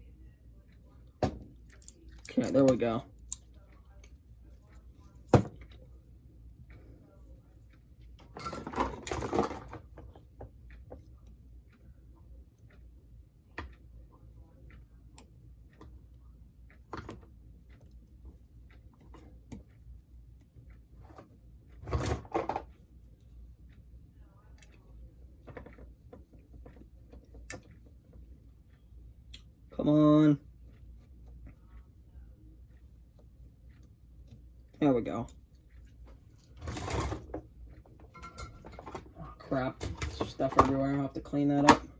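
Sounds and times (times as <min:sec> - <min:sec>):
small clicks and taps of tools: 0:00.6 - 0:05.9, 0:09.5 - 0:11.9, 0:13.5 - 0:21.8, 0:24.5 - 0:29.6.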